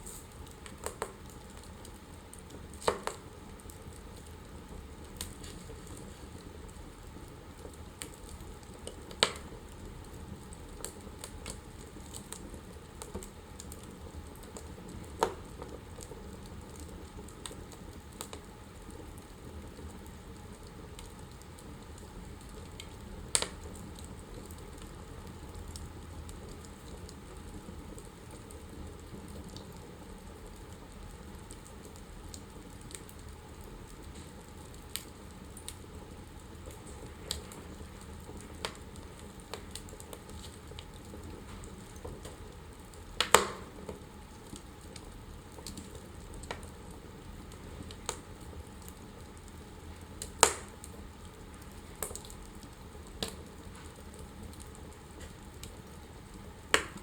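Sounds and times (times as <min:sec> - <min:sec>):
sharp fire pops: 0:00.0 - 0:01.8, 0:02.4 - 0:04.3, 0:08.0 - 0:09.6, 0:22.8 - 0:23.8, 0:38.4 - 0:45.0, 0:50.2 - 0:51.0, 0:56.7 - 0:57.0
wood fire crackling: 0:00.0 - 0:57.0.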